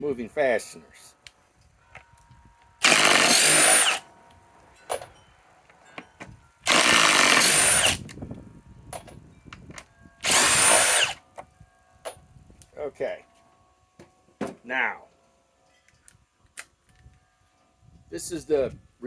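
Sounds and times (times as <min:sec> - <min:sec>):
impact wrench hammering: 0:02.8 - 0:04.0, 0:06.7 - 0:08.0, 0:10.2 - 0:11.2.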